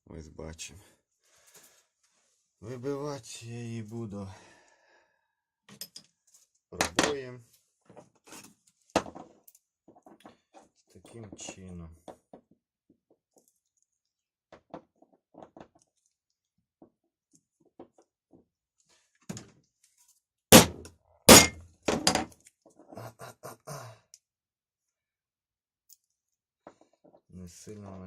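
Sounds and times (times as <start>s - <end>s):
hammer striking metal punch: 20.5s - 21.6s.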